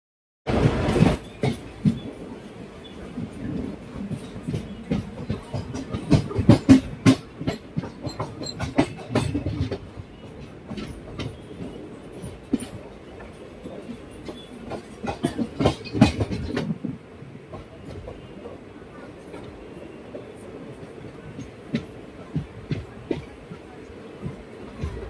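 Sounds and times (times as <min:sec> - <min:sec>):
train wheels clattering over rail joints: 0:03.5 - 0:18.3.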